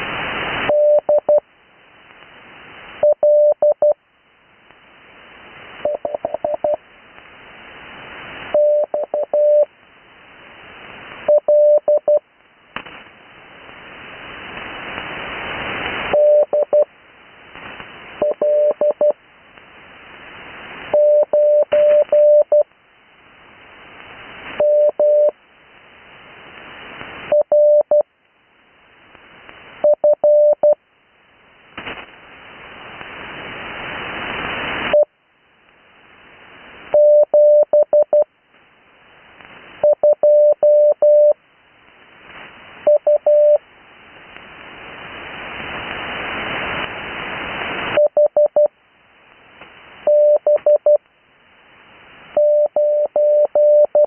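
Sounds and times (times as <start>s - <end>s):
radio band hiss: 0.0s - 54.0s
morse code tone: 52.4s - 54.0s.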